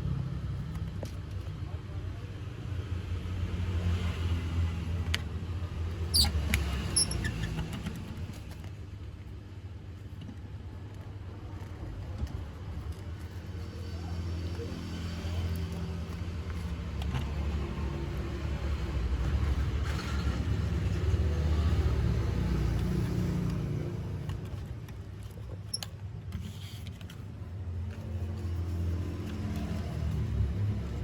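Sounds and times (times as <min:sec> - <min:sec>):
low vehicle engine rumble: 0:10.9 - 0:31.0.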